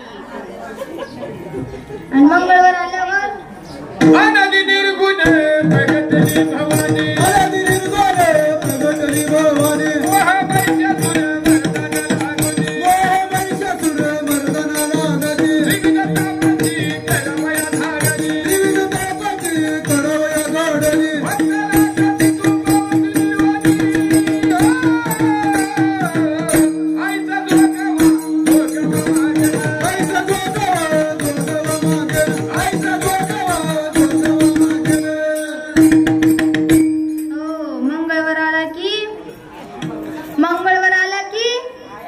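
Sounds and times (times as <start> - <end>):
drum beat: 5.2 - 37.0.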